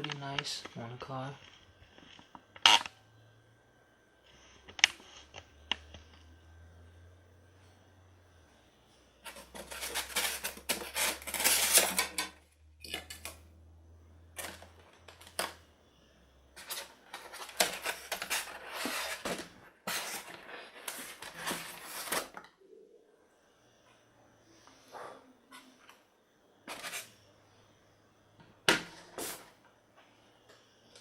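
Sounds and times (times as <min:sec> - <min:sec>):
cardboard scraping: 0:09.2 - 0:12.2, 0:16.6 - 0:22.4, 0:26.7 - 0:27.1
packaging rustling: 0:09.2 - 0:12.3, 0:14.4 - 0:15.5, 0:16.6 - 0:22.4.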